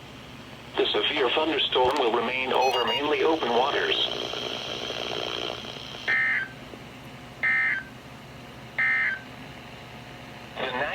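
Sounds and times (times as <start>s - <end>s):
radio hiss: 0.8s - 4.8s.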